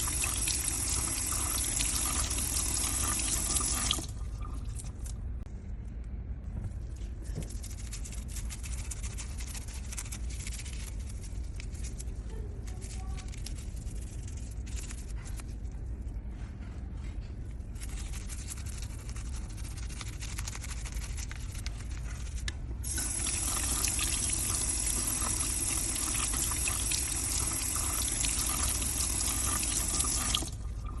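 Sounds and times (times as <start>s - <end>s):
running tap water: 0.0s - 4.2s, 22.8s - 31.0s.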